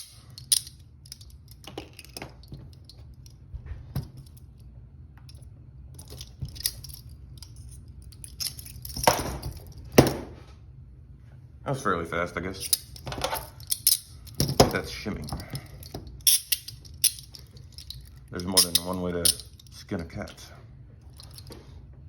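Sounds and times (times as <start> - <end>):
handcuff metallic clicks: 0.0 - 3.0, 12.6 - 14.6, 15.2 - 19.8.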